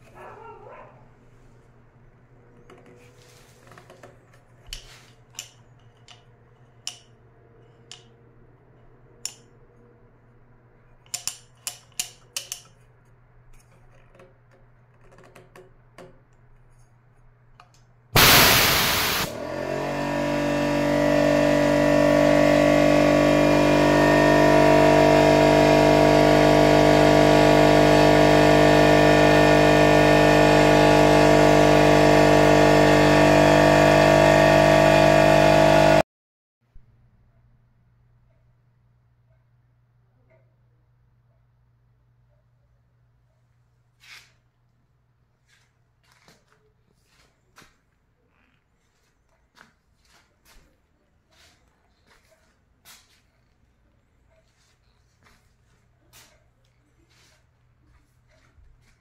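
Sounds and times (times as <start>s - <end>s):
air compressor running: 18.2s - 36.0s.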